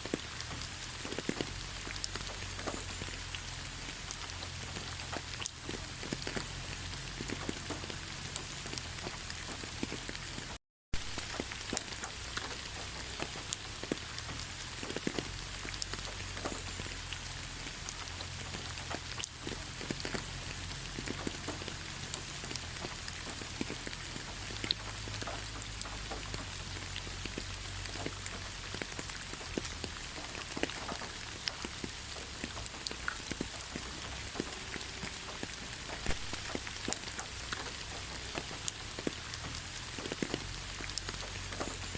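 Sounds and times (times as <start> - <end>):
gentle rain: 0.0 - 41.9
raindrops ticking on a surface: 0.0 - 41.9.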